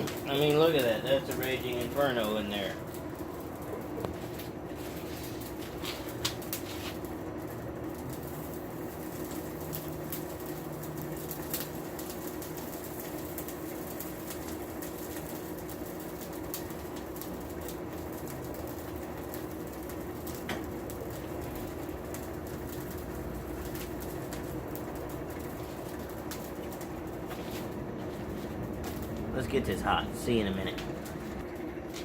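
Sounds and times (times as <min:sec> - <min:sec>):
charcoal fire rushing hum: 0:00.0 - 0:32.0
fire popping and snapping: 0:00.0 - 0:32.0.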